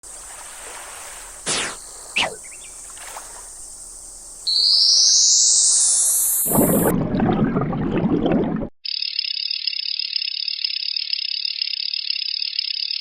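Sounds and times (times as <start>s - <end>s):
cartoon falling whistles: 1.5s - 2.4s, 4.5s - 6.9s.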